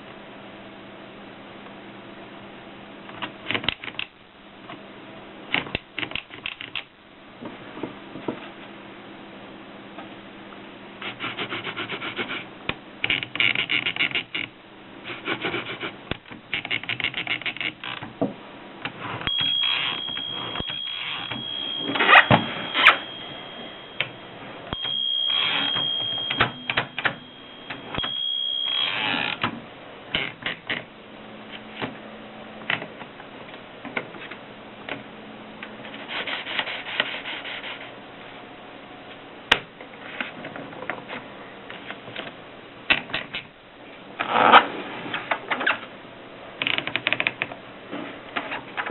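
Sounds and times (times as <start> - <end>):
steady high tone: 19.3 - 30.1.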